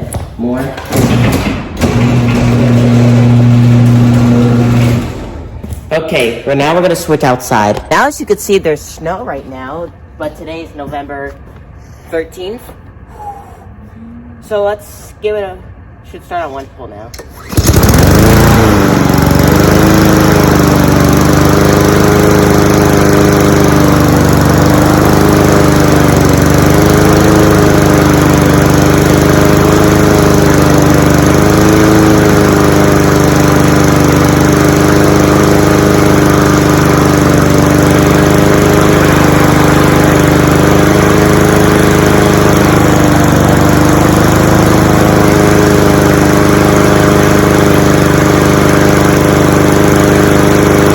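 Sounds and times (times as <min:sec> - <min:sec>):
lawn mower engine running: 0:00.8 - 0:05.8, 0:17.1 - 0:50.9.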